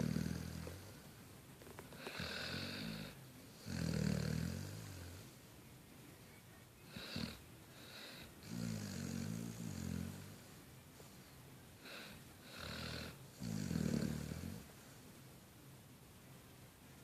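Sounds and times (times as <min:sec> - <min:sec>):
wheezy breaths: 0:01.9 - 0:03.2, 0:06.8 - 0:08.6, 0:10.9 - 0:13.2.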